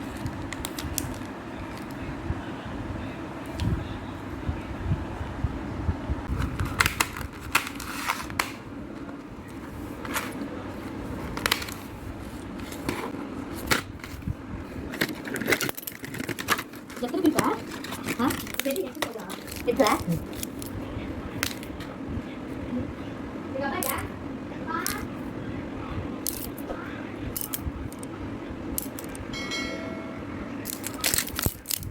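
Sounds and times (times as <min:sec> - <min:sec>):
clicks and rustles of handled objects: 0:00.0 - 0:02.1, 0:06.3 - 0:21.9, 0:26.2 - 0:26.7, 0:27.3 - 0:28.2, 0:28.8 - 0:29.3, 0:30.6 - 0:31.9
low background hum: 0:00.0 - 0:31.9
brief ringing tone: 0:29.3 - 0:30.4.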